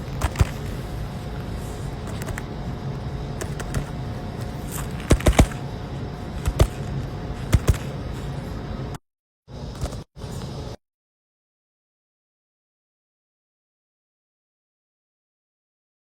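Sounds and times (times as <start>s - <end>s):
mechanical hum: 0.0s - 10.8s.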